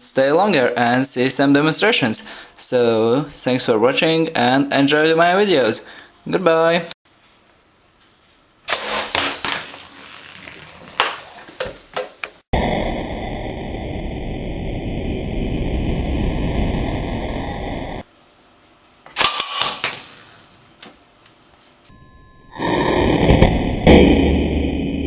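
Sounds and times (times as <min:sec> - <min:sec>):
sharp cracks and knocks: 0:19.1 - 0:20.1
loud steady rushing noise: 0:22.5 - 0:25.0.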